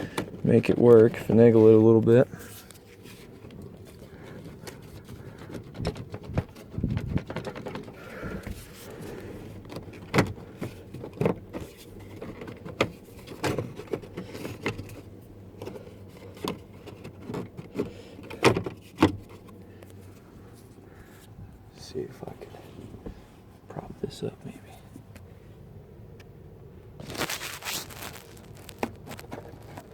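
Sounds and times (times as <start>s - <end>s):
plastic trim clicking and rattling: 3.4s - 8.6s.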